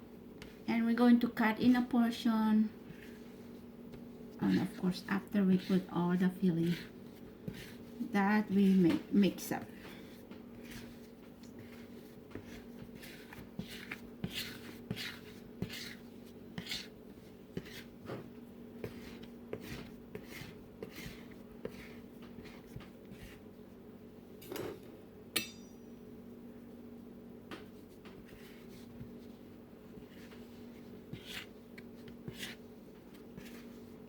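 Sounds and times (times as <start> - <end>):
steady low hum: 0.0 - 34.0
sharp metallic clink: 25.4 - 25.9.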